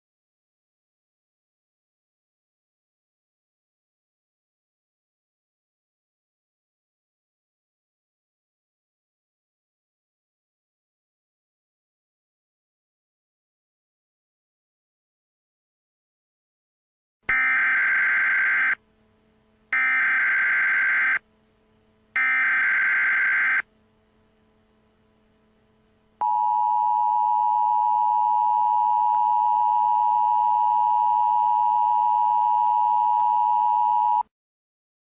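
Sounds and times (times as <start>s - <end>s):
buzzy digital data bursts: 19.8s - 21.2s, 22.2s - 23.6s.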